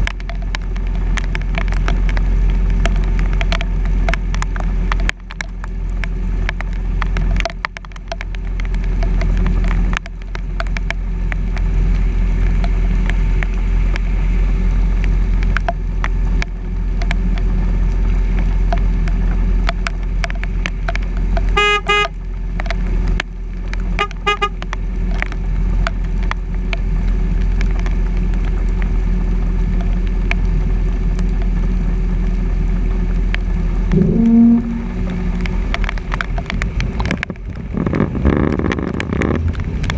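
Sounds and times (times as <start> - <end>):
truck driving through water: 0.0 - 39.9
car horn: 21.6 - 22.1, 24.0 - 24.6, 33.9 - 35.4.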